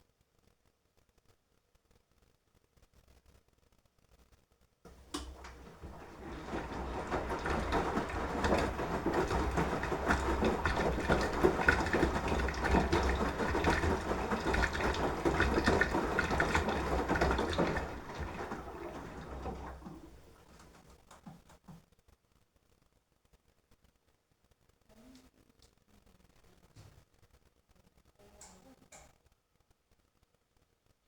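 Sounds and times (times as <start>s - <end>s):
washing machine motor hum: 4.9s - 21.8s
water and laundry sloshing: 4.9s - 21.8s.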